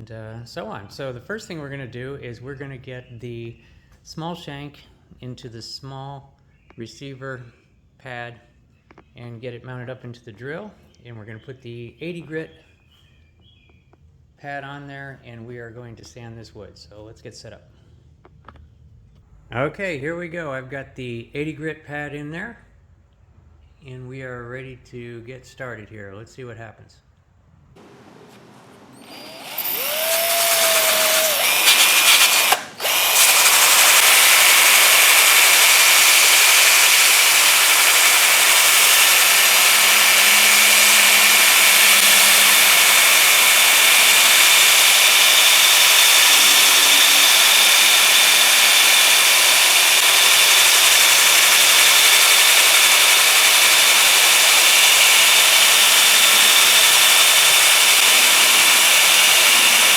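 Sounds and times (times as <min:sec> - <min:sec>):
electric drill sanding wood: 0:29.0 - 0:59.9.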